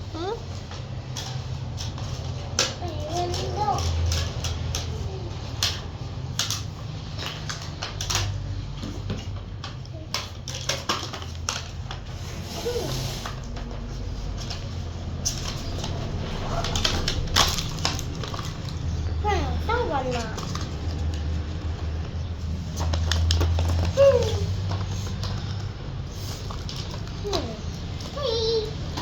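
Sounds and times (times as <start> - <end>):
packaging clicks and taps: 0.7 - 12.0, 13.4 - 19.1, 19.7 - 29.0
packaging rustling: 10.4 - 28.2.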